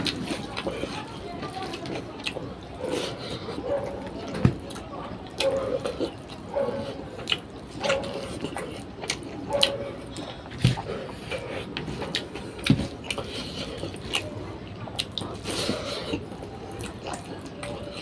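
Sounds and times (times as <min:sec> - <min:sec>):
person chewing: 0:00.0 - 0:18.0.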